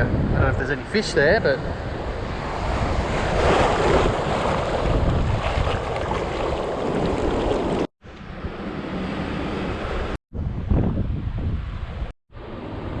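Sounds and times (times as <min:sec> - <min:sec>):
wind buffeting microphone: 0:00.0 - 0:08.6, 0:09.6 - 0:12.1
water washing over flats: 0:02.6 - 0:07.9.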